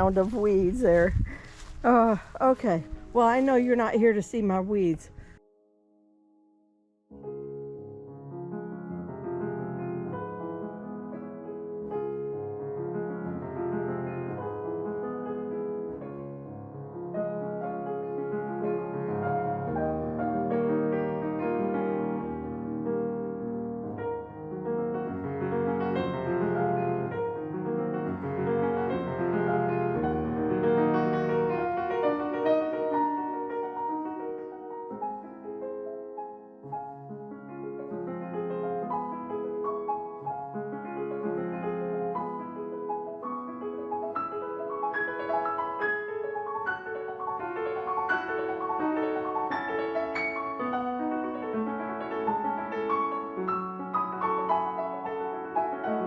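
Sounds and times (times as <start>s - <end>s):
gentle classical piano music: 0.0s - 56.0s.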